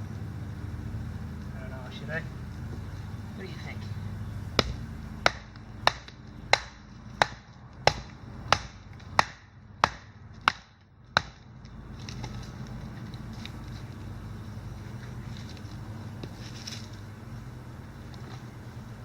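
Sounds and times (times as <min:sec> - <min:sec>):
chopping wood: 0:04.6 - 0:12.4.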